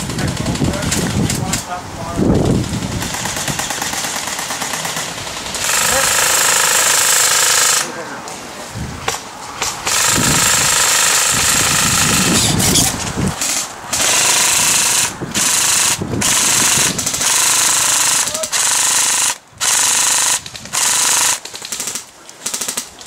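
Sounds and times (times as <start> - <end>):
toy gun firing full auto: 3.4 - 7.9, 9.9 - 12.5, 13.4 - 22.0.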